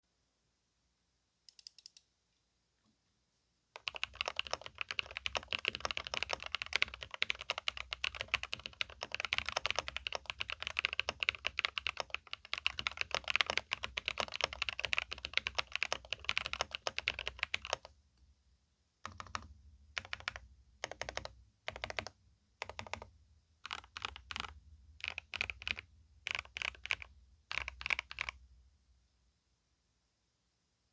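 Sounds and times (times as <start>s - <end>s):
mechanical keyboard typing: 3.8s - 17.9s, 19.0s - 28.4s.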